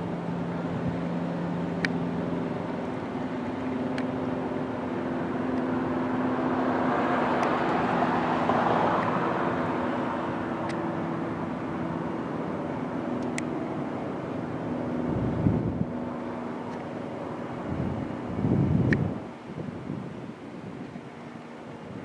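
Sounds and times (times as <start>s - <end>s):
vehicle passing: 4.7s - 13.0s.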